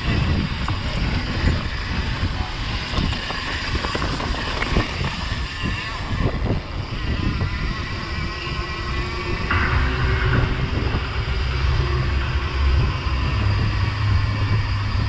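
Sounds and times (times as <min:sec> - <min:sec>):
wind and tyres rumbling: 0:00.0 - 0:15.0
bike clicks and rattles: 0:00.1 - 0:06.9.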